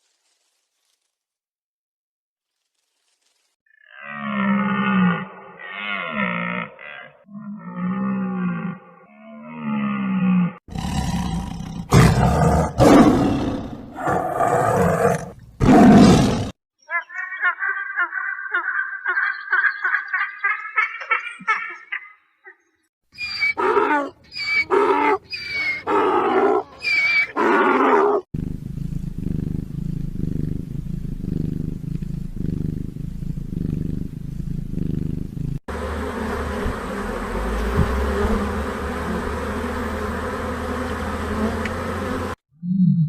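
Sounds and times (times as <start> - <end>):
steady animal humming: 23.2 - 42.4.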